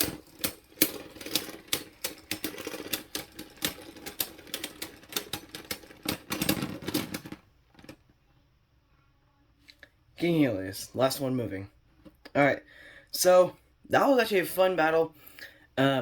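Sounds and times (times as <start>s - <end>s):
spinning tops clattering: 0.0s - 7.4s.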